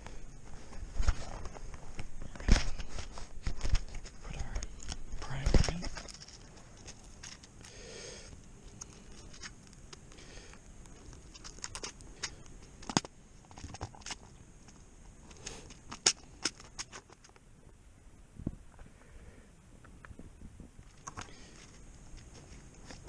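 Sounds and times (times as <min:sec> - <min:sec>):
rifle handling clicks and scratches: 0:01.0 - 0:07.7, 0:10.9 - 0:17.4.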